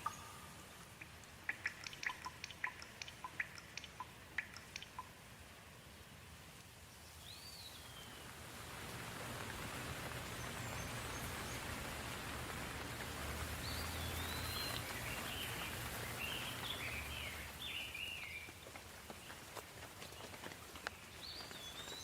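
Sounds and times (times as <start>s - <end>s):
bird chirping: 0.0s - 5.2s, 13.6s - 18.6s
water drips ticking: 0.0s - 5.6s, 8.8s - 22.0s
soft rain falling: 0.0s - 22.0s.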